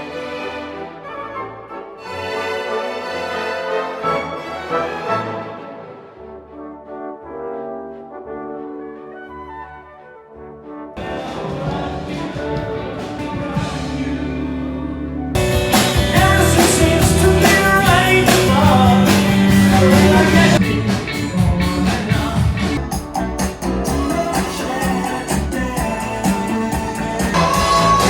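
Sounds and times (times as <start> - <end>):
band song with singing: 11.0 - 28.0.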